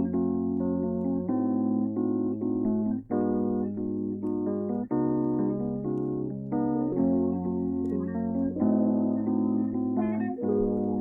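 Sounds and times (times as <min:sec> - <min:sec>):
keyboard chords: 0:00.0 - 0:11.0.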